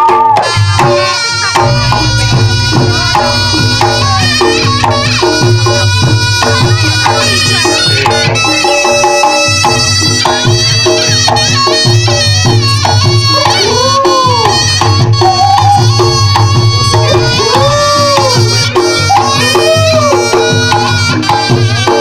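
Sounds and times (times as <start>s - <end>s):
drums beating: 0.0s - 22.0s
shawm playing melody: 0.0s - 22.0s.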